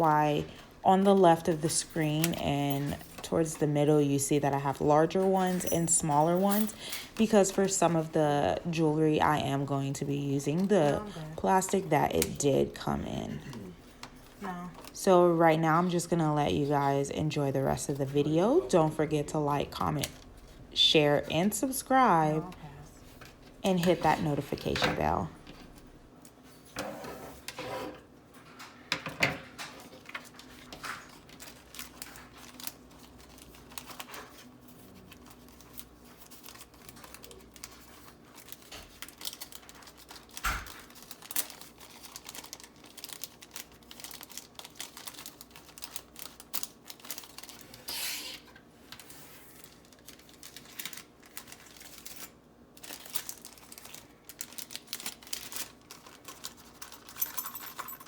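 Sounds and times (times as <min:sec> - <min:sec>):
plastic bags crinkling: 0:29.5 - 0:58.0
paper cards rustling: 0:29.7 - 0:57.2.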